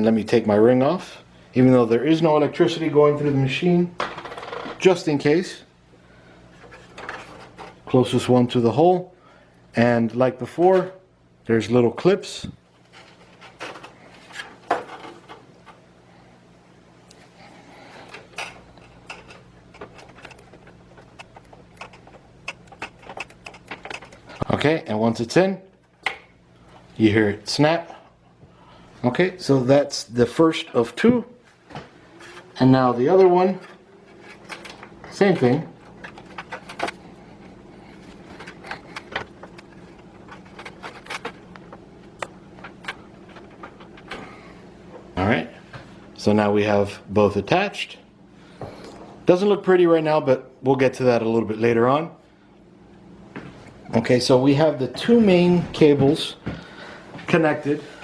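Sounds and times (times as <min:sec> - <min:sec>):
cable rustling: 0:12.7 - 0:15.8, 0:17.1 - 0:24.6, 0:30.8 - 0:45.2.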